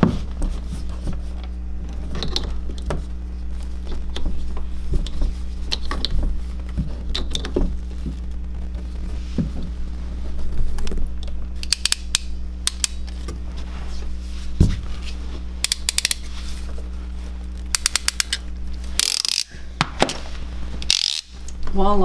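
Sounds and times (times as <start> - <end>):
steady low hum: 0.0 - 22.0
ratcheting hand tool clicking: 11.6 - 13.0, 15.6 - 16.2, 17.7 - 18.4, 19.0 - 19.5, 20.8 - 21.4.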